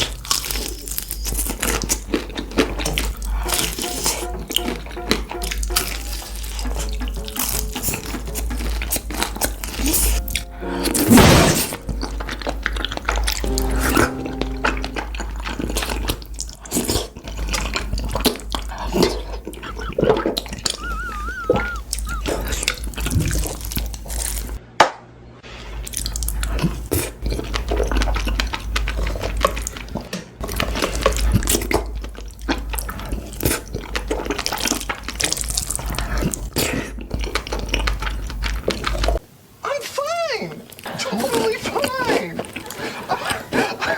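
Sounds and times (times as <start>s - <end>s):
wet chewing and slurping: 0.0s - 4.0s, 6.0s - 10.2s, 15.9s - 24.6s, 25.7s - 39.2s, 40.7s - 43.9s.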